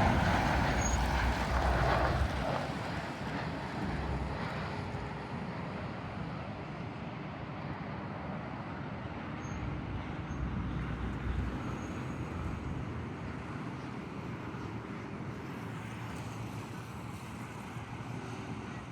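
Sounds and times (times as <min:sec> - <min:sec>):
jet engine rumble: 0:00.0 - 0:06.2, 0:09.1 - 0:14.5.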